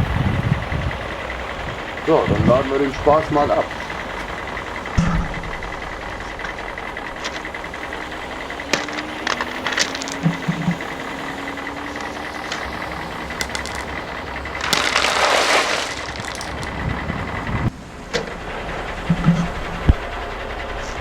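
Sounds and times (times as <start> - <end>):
stones rattling out of truck bed: 2.0 - 11.3, 12.0 - 17.6
plastic clicks: 12.0 - 15.1.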